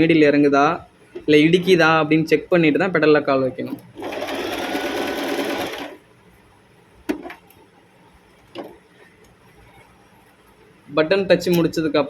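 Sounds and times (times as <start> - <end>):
sewing machine running: 3.7 - 6.0.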